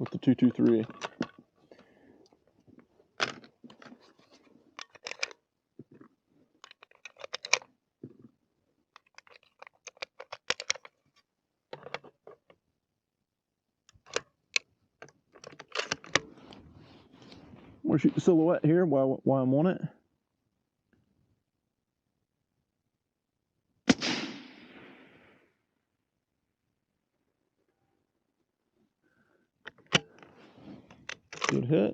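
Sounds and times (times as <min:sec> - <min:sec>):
gear being handled: 0:00.0 - 0:01.4, 0:03.2 - 0:05.4, 0:06.0 - 0:07.7, 0:09.0 - 0:11.2, 0:15.0 - 0:17.5, 0:29.7 - 0:31.7.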